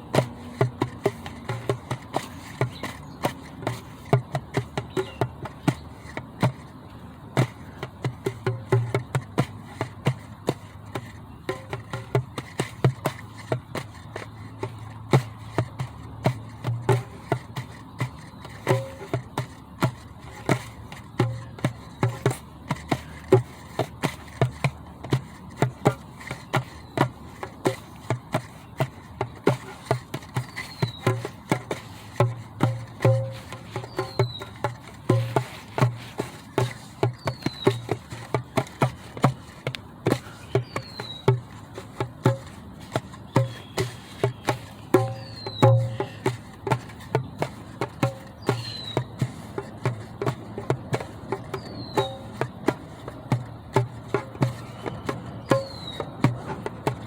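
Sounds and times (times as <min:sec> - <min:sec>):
hand drum thumps: 0:00.1 - 0:06.8, 0:07.4 - 0:57.0
hand drum hits: 0:29.4 - 0:49.3
bird whistle call: 0:43.4 - 0:44.4, 0:48.4 - 0:49.1, 0:55.6 - 0:56.1.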